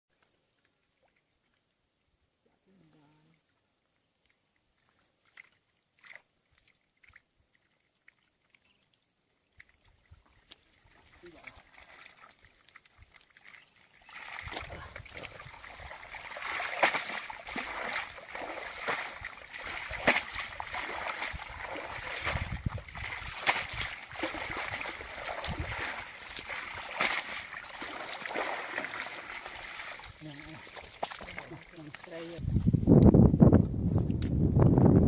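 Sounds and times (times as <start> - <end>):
water splashing and sloshing: 0.1 - 2.1, 3.2 - 32.6.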